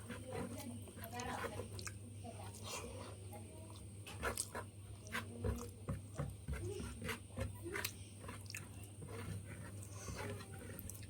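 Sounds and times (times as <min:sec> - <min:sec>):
person chewing food: 0:07.8 - 0:08.8, 0:09.8 - 0:11.0.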